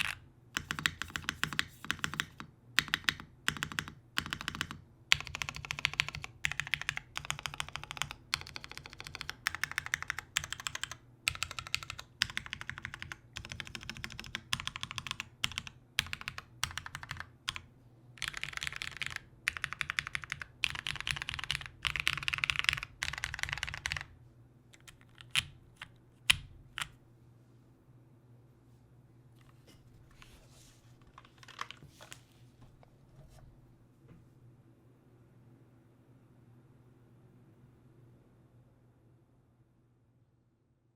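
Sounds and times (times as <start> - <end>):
rapid mechanical keyboard keystrokes: 0.0 - 24.1, 24.8 - 27.0, 31.1 - 31.8.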